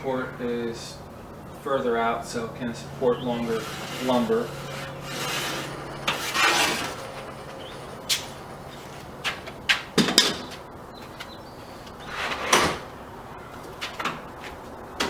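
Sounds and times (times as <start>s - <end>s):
wooden sliding rub: 2.9s - 9.4s.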